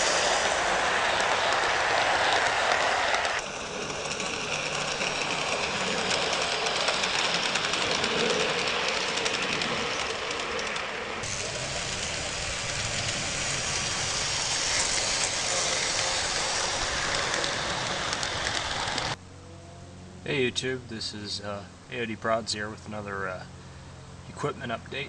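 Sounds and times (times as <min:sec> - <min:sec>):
model train motor and wheels: 0:00.0 - 0:19.2
wheels clicking on rails: 0:00.0 - 0:19.2.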